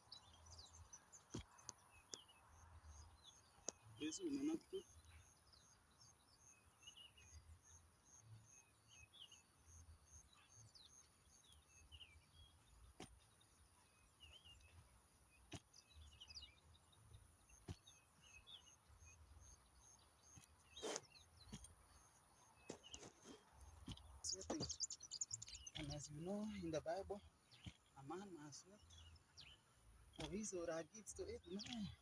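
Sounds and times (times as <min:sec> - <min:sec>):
small birds chirping: 0:00.0 - 0:32.0.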